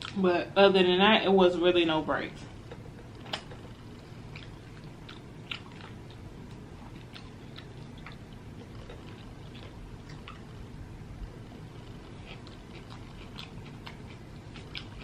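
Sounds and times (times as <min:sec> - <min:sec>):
person chewing food: 0:02.5 - 0:15.0.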